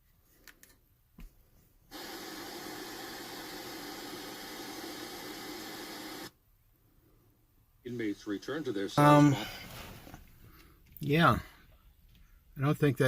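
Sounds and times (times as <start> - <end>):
steady hiss: 1.9 - 6.3, 7.8 - 10.3.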